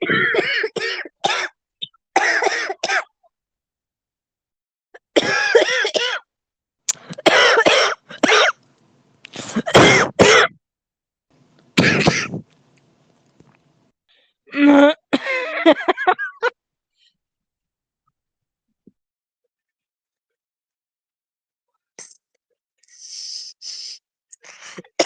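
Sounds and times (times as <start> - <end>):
person coughing: 0.0 - 1.5, 2.2 - 3.1, 5.1 - 6.2, 6.9 - 8.6, 9.4 - 10.6, 11.8 - 12.4, 14.7 - 16.5.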